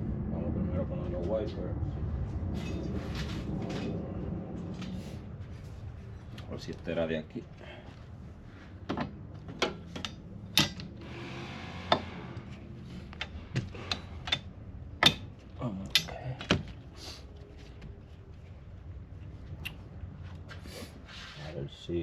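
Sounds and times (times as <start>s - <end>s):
metal clicks and knocks: 8.9s - 11.0s, 13.0s - 16.8s.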